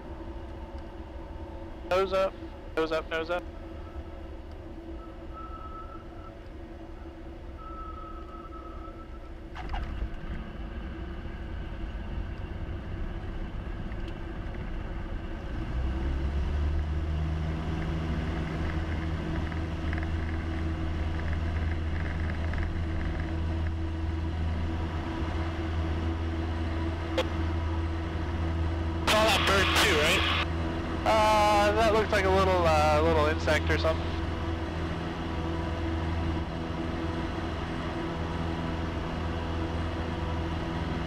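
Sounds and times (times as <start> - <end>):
propeller plane engine droning: 0.0 - 41.0.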